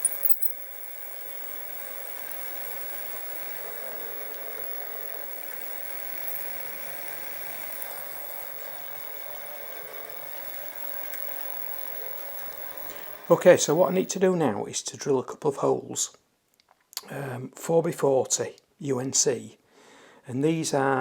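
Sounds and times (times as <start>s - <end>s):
milling machine spindle motor hum: 0.0s - 14.1s.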